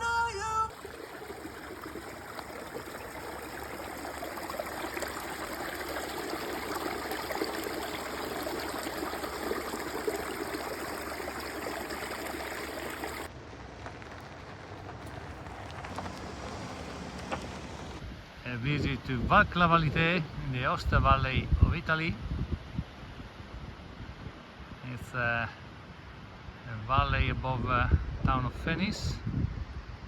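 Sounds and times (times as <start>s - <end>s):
stream water flowing: 0.0s - 13.3s, 14.4s - 18.0s.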